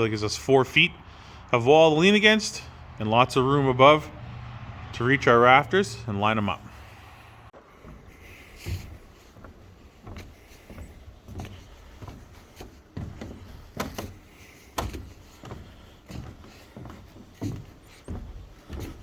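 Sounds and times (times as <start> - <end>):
knocks and thumps: 7.9 - 19.0.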